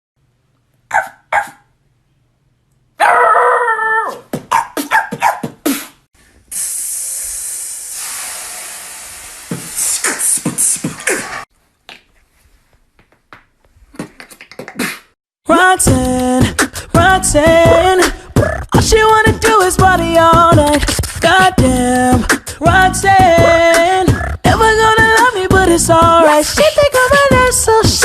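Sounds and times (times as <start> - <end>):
beatboxer imitating dog: 3.8 - 6.0, 9.8 - 11.4, 14.0 - 15.1, 15.8 - 26.2.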